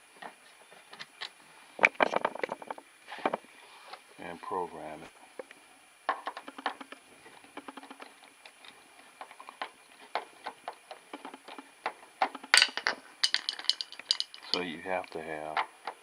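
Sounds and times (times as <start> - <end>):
handling clicks and taps: 7.6 - 16.0.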